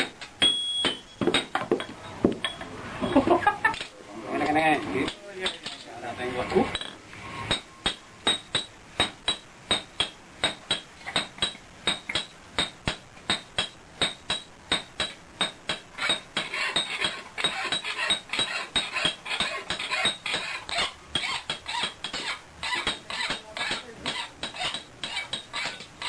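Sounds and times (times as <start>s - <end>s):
hammer striking metal on anvil: 5.1s - 5.9s, 6.7s - 26.0s.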